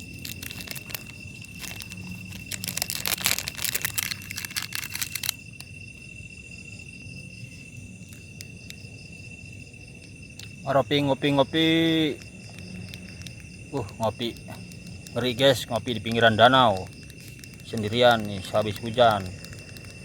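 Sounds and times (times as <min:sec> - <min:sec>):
crinkling handling noise: 0:00.0 - 0:05.7, 0:11.9 - 0:20.0
high insect trill: 0:00.0 - 0:20.0.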